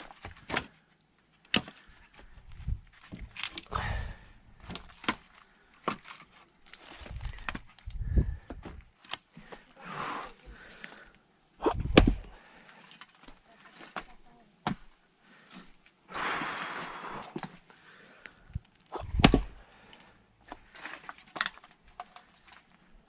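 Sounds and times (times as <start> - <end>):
axe splitting firewood: 0.0 - 0.8, 1.4 - 2.0, 2.8 - 11.0, 11.6 - 15.0, 18.9 - 19.6, 20.4 - 22.7
person breathing out: 3.7 - 4.5, 9.4 - 12.8, 15.4 - 20.2.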